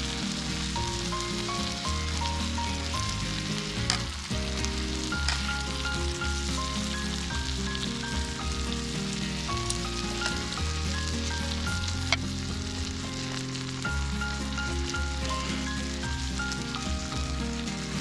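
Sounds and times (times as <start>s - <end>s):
background music: 0.0s - 18.0s.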